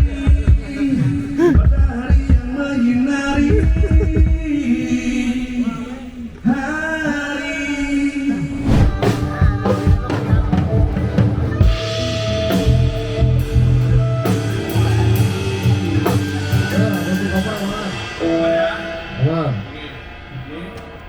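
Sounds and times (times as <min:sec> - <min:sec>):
drum kit beating: 0:00.0 - 0:02.6, 0:03.4 - 0:04.5, 0:08.8 - 0:19.4
rock band playing: 0:09.0 - 0:19.6.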